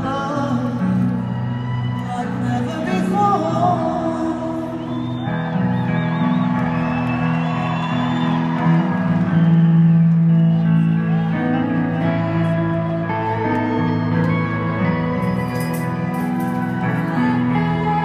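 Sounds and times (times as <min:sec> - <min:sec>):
music with sustained chords: 0:05.6 - 0:18.0.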